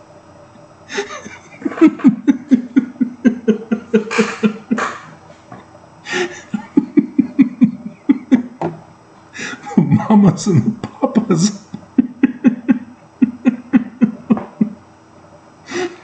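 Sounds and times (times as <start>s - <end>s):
man laughing hard: 0.9s - 5.2s, 6.1s - 8.7s, 9.4s - 14.8s, 15.7s - 16.0s.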